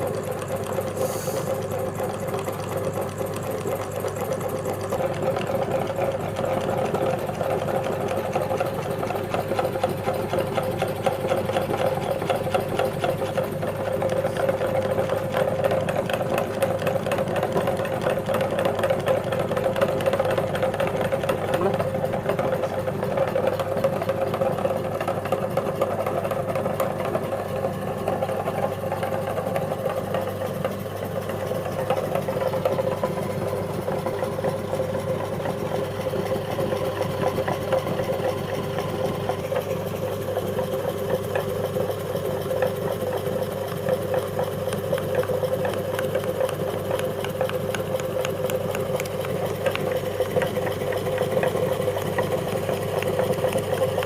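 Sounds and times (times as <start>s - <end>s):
biscuits crackling in grinder: 0.0s - 25.5s, 40.4s - 54.0s
meat grinder motor humming: 0.0s - 54.0s.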